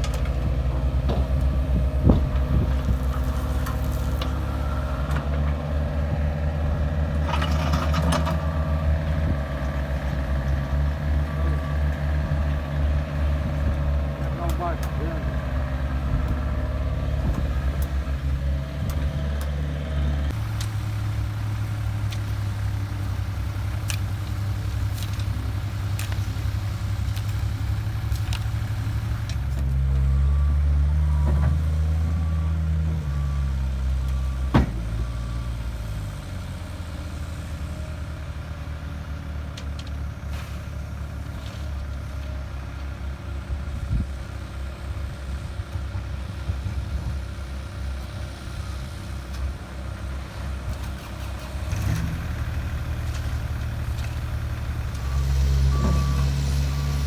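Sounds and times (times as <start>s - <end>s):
diesel engine of heavy machinery: 0.0s - 57.0s
reversing alarm beeping: 30.0s - 35.7s, 55.0s - 57.0s.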